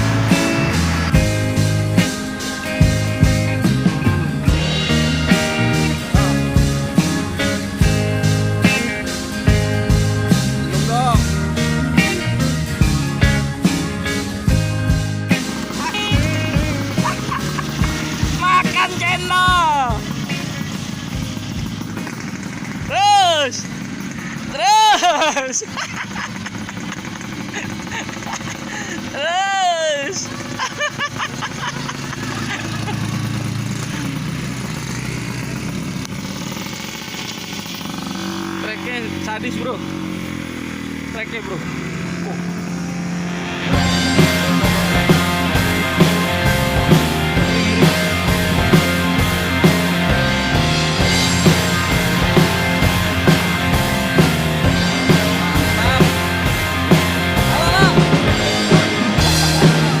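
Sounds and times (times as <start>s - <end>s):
rock music with singing: 0.0s - 22.0s, 22.7s - 25.7s, 41.0s - 60.0s
motorcycle engine running: 0.0s - 60.0s.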